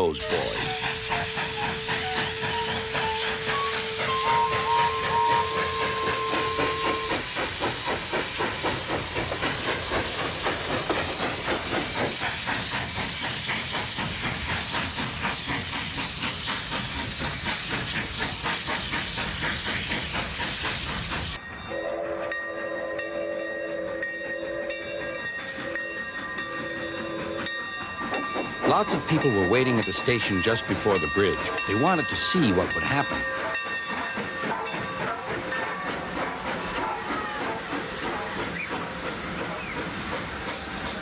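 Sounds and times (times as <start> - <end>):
hiss of steam: 0.0 - 21.4, 25.0 - 41.0
steam locomotive chuffing: 0.0 - 41.0
steam whistle blowing: 0.2 - 7.3.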